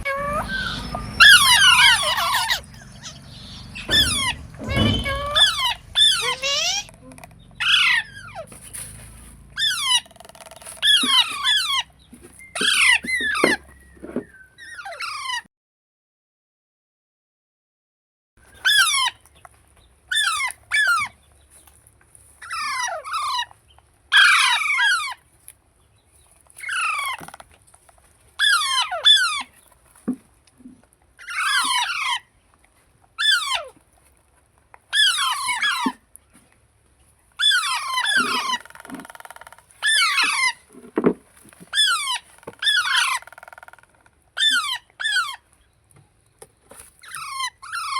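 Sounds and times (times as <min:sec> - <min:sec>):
parakeet chicks screeching: 0:00.0 - 0:08.9, 0:09.6 - 0:15.4, 0:18.5 - 0:19.2, 0:20.1 - 0:21.2, 0:22.4 - 0:23.5, 0:24.1 - 0:25.2, 0:26.6 - 0:27.4, 0:28.4 - 0:29.6, 0:31.2 - 0:32.2, 0:33.2 - 0:33.7, 0:34.9 - 0:36.0, 0:37.4 - 0:40.8, 0:41.6 - 0:45.5, 0:47.0 - 0:47.9.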